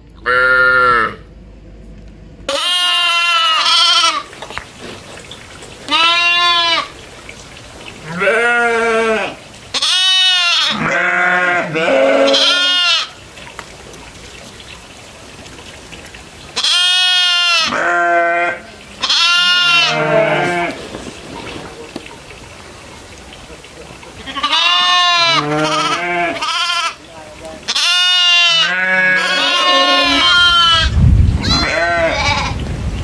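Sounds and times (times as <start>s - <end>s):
goats bleating: 0.2s - 1.2s, 2.5s - 4.4s, 5.9s - 6.9s, 8.0s - 13.2s, 16.6s - 21.0s, 24.1s - 32.6s.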